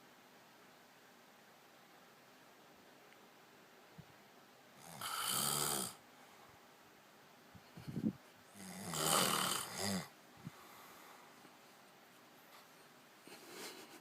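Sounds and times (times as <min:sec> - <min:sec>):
man snoring: 0:04.8 - 0:06.0, 0:08.5 - 0:10.1
short breath: 0:10.4 - 0:11.4.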